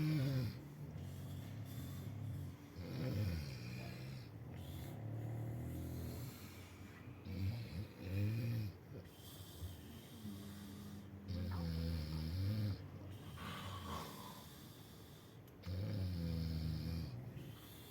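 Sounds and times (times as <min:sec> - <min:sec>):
person snoring: 0:00.0 - 0:06.4
quiet breathing: 0:00.0 - 0:17.9.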